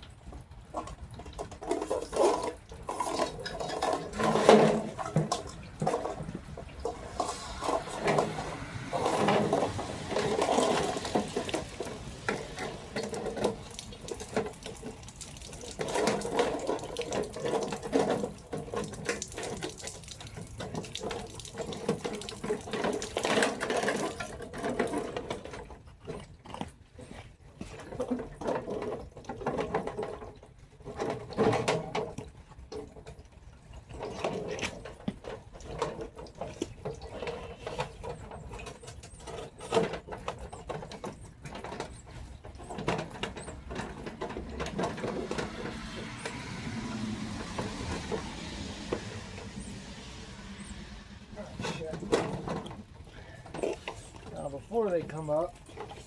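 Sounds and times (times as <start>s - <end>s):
running splashing water: 1.8s - 24.4s.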